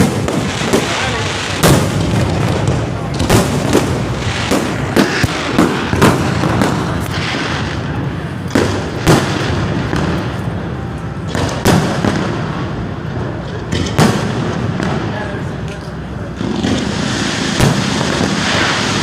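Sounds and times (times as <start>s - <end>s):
continuous rumble and crackle: 0.0s - 19.0s.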